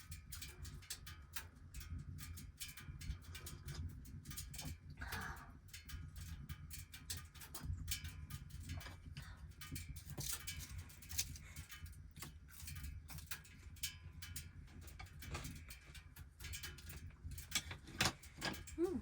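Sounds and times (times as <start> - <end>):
small clicks and taps: 5.8 - 18.9.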